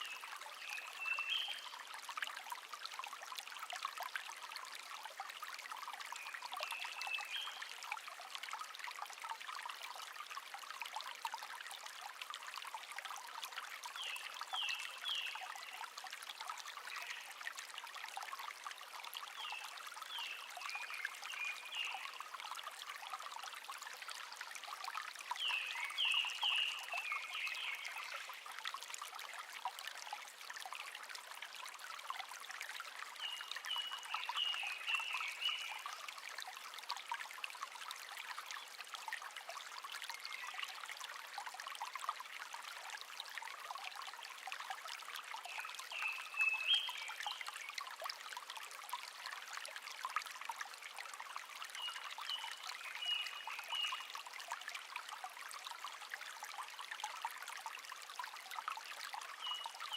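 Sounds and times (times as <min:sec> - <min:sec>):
stream babbling: 0:00.0 - 0:59.9.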